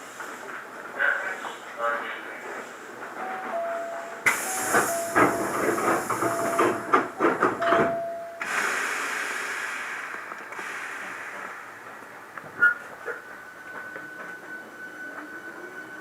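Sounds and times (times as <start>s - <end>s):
rush of hiss with clattering knocks: 0.0s - 1.6s, 4.2s - 12.6s
train motor whine: 3.2s - 16.0s.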